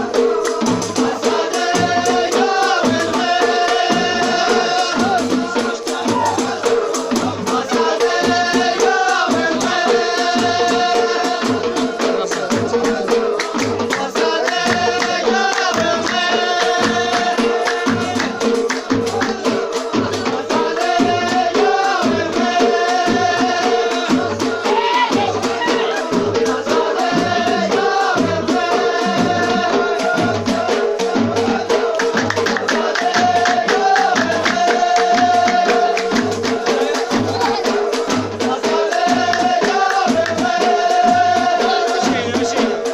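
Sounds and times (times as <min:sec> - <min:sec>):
shaken rattling percussion: 0:00.0 - 0:42.9
steady drum beat: 0:00.0 - 0:42.9.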